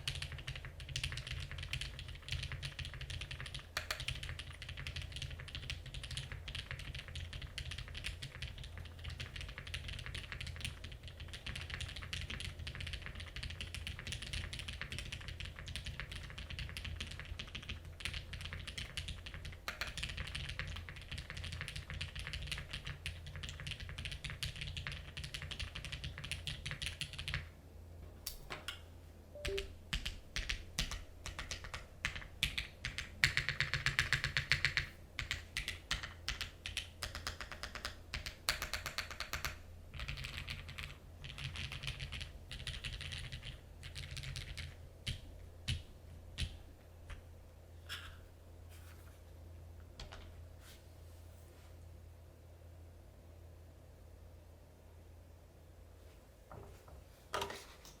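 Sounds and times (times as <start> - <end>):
typing on mechanical keyboard: 0.0 - 27.5, 29.4 - 47.2.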